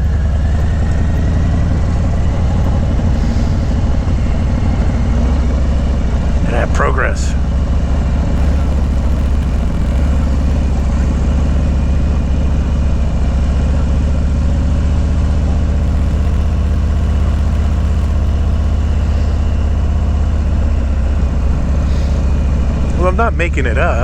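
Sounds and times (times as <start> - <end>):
motorcycle engine running: 0.0 - 6.5, 7.4 - 23.4.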